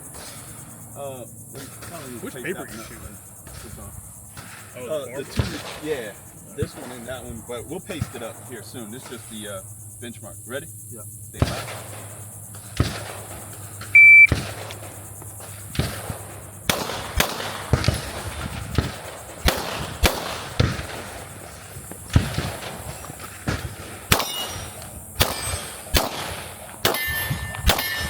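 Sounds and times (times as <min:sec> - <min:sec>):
pistol shots: 0:11.4 - 0:28.0
shot timer beep: 0:14.0 - 0:14.3
steel targets clanging: 0:24.1 - 0:28.0.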